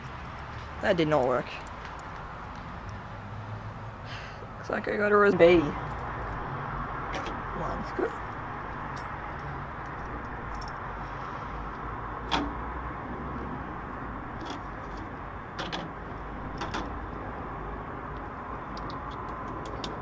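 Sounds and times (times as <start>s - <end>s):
metallic clicks and taps: 18.1s - 20.0s.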